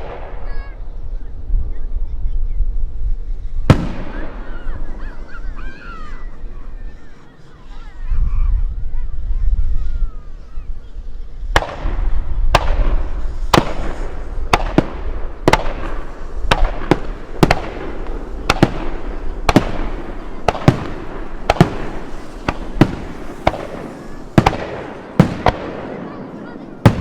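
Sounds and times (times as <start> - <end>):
firework shells bursting: 3.5 - 7.0, 11.5 - 26.1.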